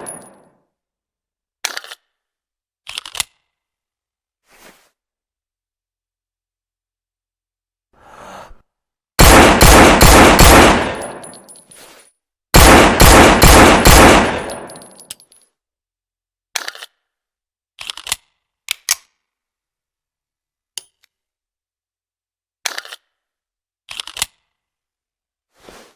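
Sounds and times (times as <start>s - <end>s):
pistol shots echoing: 9.2s - 11.3s, 12.6s - 14.9s.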